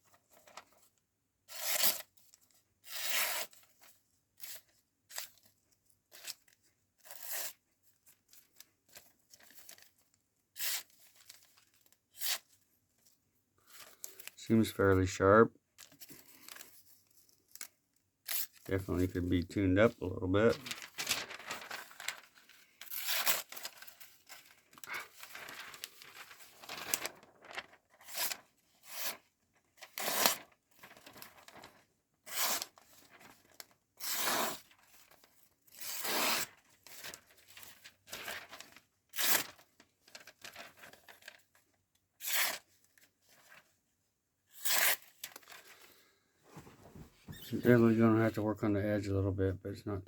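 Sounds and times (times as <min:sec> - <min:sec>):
knife blade slicing paper: 0:44.6 - 0:45.0.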